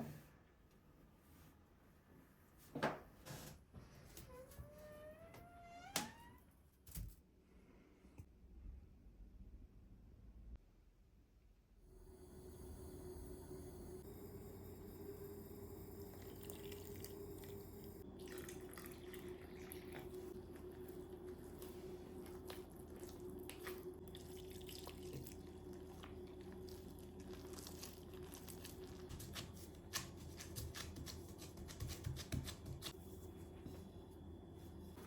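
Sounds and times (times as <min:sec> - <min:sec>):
steady low hum: 0:11.9 - 0:35.0.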